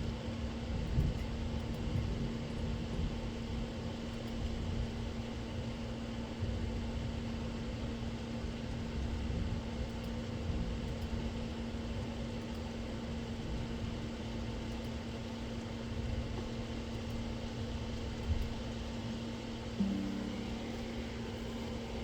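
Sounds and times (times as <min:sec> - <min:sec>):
mechanical droning hum: 0:13.0 - 0:22.0.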